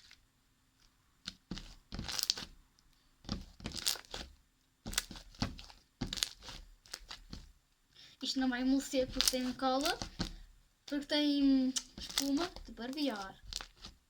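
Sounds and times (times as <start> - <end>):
slime squished by hand: 3.3 - 7.4, 11.7 - 14.0.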